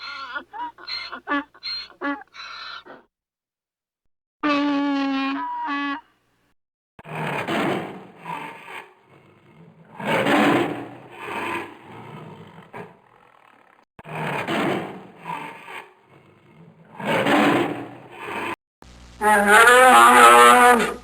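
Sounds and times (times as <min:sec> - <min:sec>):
animal rasping call: 0:00.0 - 0:03.1, 0:04.4 - 0:06.2, 0:19.2 - 0:21.0.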